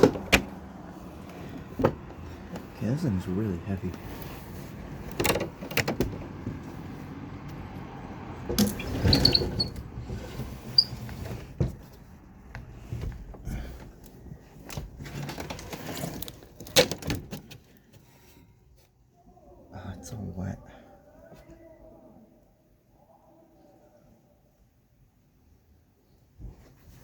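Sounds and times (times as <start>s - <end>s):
air conditioner casing clunking: 0.0s - 3.0s, 4.8s - 6.8s, 8.4s - 10.1s
brief squeak: 8.7s - 9.8s, 10.7s - 11.1s.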